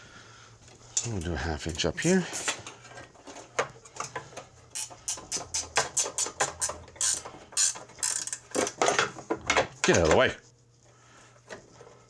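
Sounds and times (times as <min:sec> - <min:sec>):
wrench clicking on bolt: 0:04.8 - 0:08.8.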